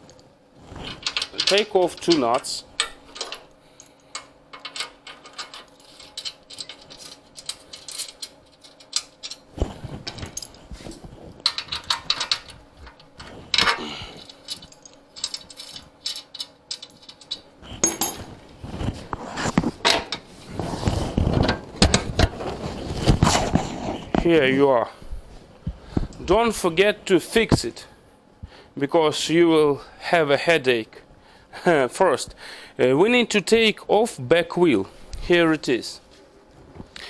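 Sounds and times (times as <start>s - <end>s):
metal parts clattering: 0.8s - 18.3s.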